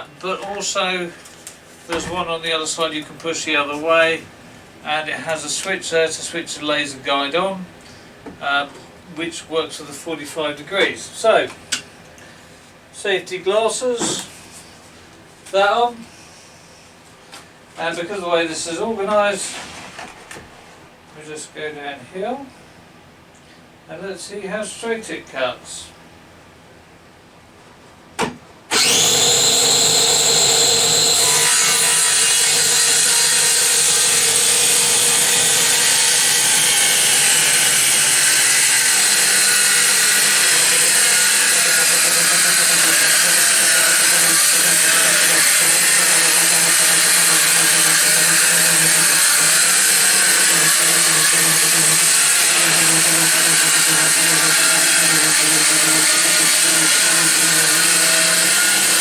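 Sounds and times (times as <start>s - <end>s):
circular saw cutting wood: 28.7s - 59.0s
circular saw whining: 28.7s - 59.0s.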